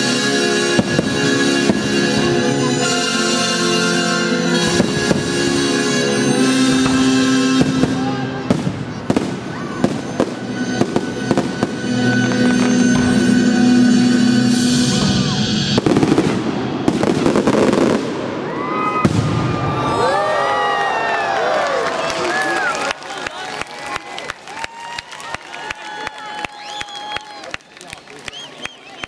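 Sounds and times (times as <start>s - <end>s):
loud music: 0.0s - 18.0s
fireworks bangs and crackles: 0.6s - 3.3s, 4.6s - 20.4s.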